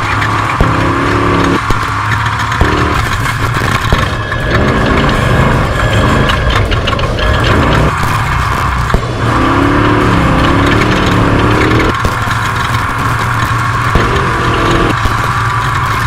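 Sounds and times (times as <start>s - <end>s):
knocks and rattles from bumps: 0.0s - 9.2s
truck engine running hard: 0.0s - 16.0s.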